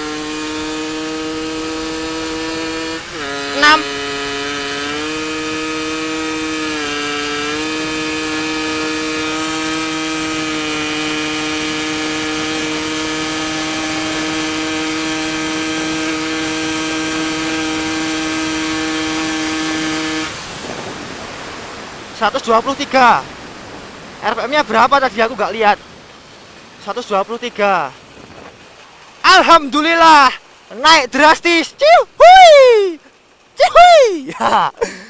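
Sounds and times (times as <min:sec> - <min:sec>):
two-stroke motorcycle engine running: 0:00.0 - 0:23.0.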